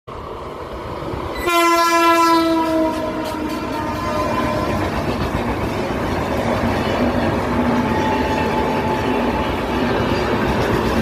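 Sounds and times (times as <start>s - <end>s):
train running rumble: 0.1s - 11.0s
train horn blast: 1.4s - 5.0s.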